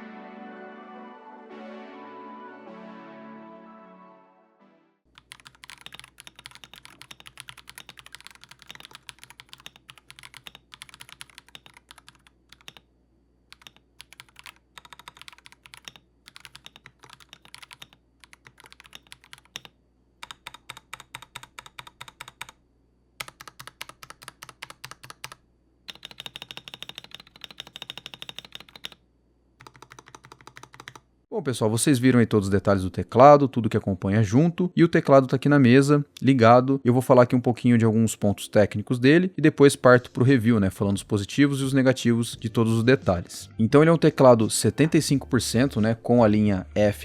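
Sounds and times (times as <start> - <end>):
mechanical keyboard clacks: 5.2 - 12.8, 13.5 - 22.6, 23.2 - 29.0, 29.6 - 31.0.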